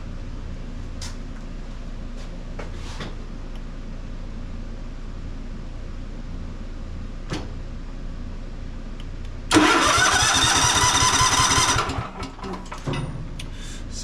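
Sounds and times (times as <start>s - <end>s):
electric starter cranking engine: 9.5s - 12.8s.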